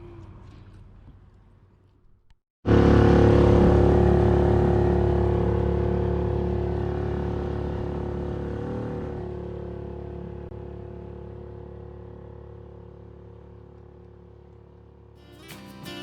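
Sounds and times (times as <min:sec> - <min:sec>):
outboard motor running: 0:02.6 - 0:15.3.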